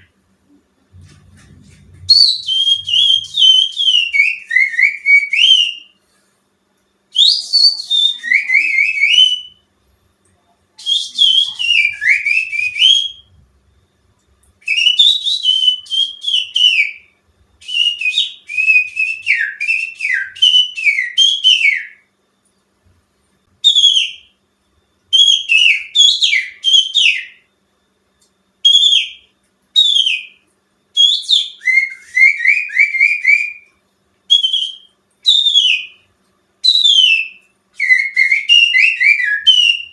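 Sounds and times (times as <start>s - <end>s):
finger whistling bird song: 1.2s - 6.0s, 7.1s - 9.7s, 10.8s - 13.4s, 14.6s - 22.1s, 23.6s - 24.4s, 25.1s - 27.5s, 28.6s - 39.9s.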